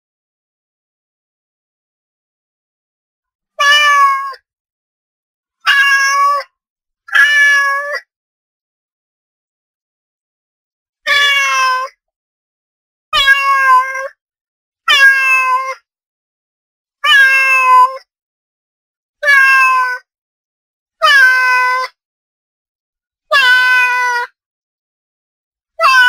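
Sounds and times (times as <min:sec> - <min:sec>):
cat meowing: 0:03.6 - 0:04.4, 0:05.6 - 0:06.5, 0:07.1 - 0:08.1, 0:11.1 - 0:12.0, 0:13.2 - 0:14.2, 0:14.9 - 0:15.8, 0:17.0 - 0:18.1, 0:19.2 - 0:20.1, 0:21.0 - 0:22.0, 0:23.3 - 0:24.4, 0:25.8 - 0:26.0.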